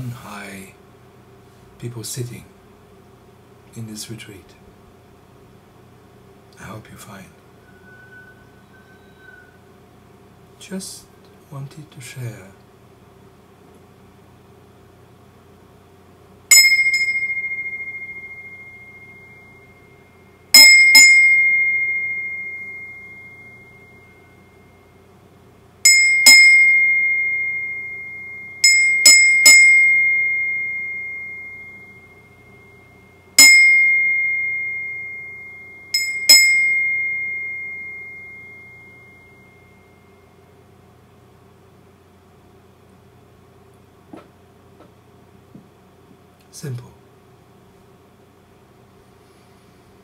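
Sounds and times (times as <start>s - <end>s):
high-pitched bell ringing: 16.5s - 24.9s, 25.8s - 40.2s.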